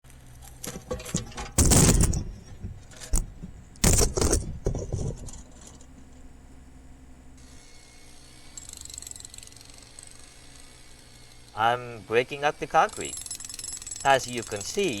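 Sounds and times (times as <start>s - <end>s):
debris clattering onto a pile: 0.6s - 2.3s.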